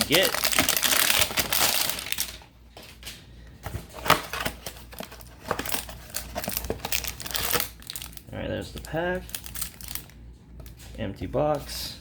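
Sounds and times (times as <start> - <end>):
card pack rustling: 0.0 - 3.0, 3.6 - 10.2
cardboard box tearing: 0.1 - 2.2, 4.0 - 8.0.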